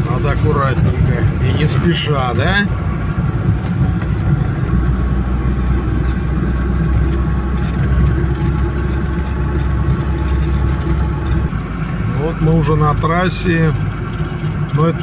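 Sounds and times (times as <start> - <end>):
road noise: 0.0 - 15.0
vehicle engine drone from cabin: 0.0 - 15.0.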